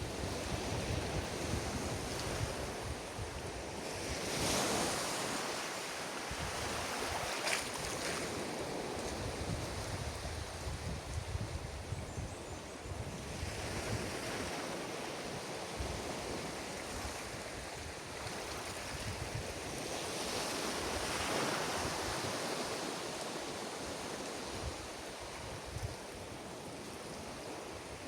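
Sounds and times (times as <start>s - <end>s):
wind buffeting microphone: 8.9s - 14.3s.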